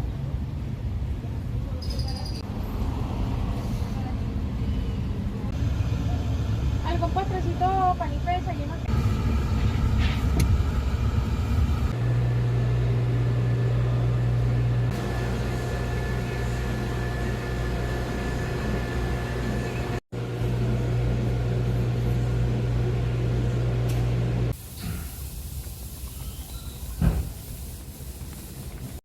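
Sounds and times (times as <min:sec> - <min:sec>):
machine humming: 0:08.8 - 0:24.8.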